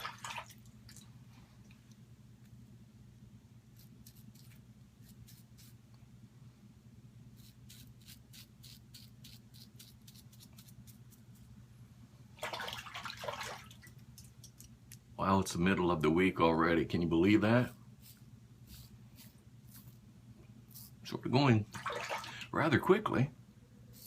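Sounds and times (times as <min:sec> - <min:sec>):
low steady hum: 0:00.0 - 0:24.0
razor scraping stubble: 0:03.7 - 0:05.8, 0:07.4 - 0:11.5, 0:17.4 - 0:20.0, 0:20.7 - 0:21.0.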